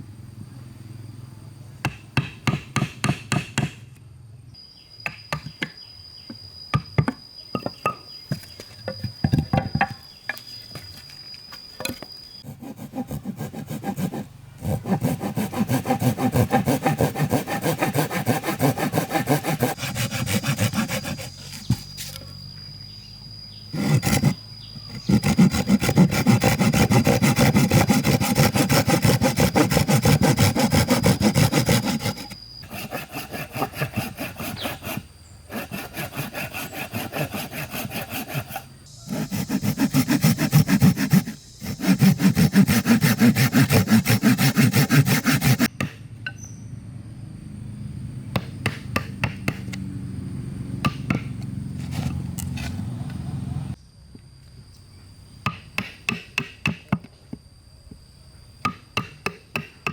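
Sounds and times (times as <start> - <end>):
saw cutting wood: 12.4 - 22.2, 23.7 - 45.7, 51.0 - 53.3.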